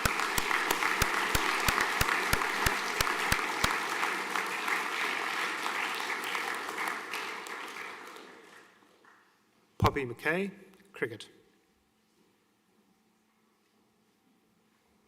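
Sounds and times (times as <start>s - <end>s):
loud even clap: 0.0s - 8.7s
audience applause: 0.0s - 8.8s.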